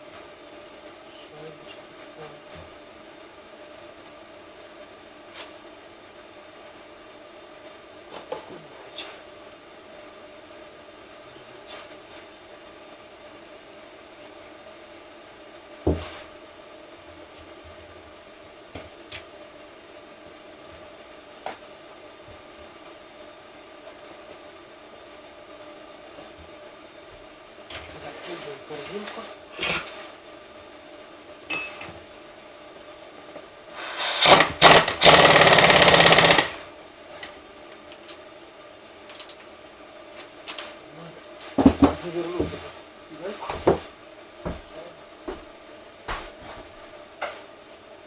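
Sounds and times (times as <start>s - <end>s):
faint steady hum: 0.0s - 48.0s
impact wrench hammering: 33.8s - 36.6s.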